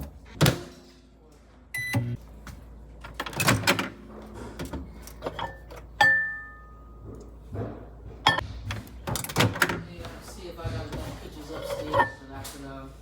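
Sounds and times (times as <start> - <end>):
kitchen handling clicks and thuds: 0.0 - 1.0, 2.0 - 12.9
glass clinking: 5.4 - 6.9.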